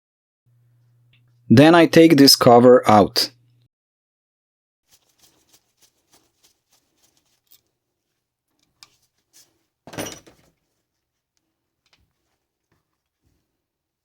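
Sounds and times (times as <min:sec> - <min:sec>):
small clicks and handling noises: 0:05.2 - 0:07.7, 0:08.5 - 0:09.5, 0:11.4 - 0:13.4.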